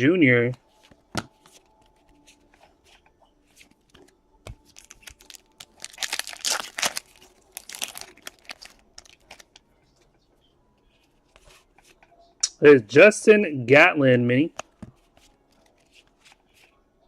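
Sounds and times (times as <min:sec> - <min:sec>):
wrapper tearing and crinkling: 0:04.7 - 0:09.6.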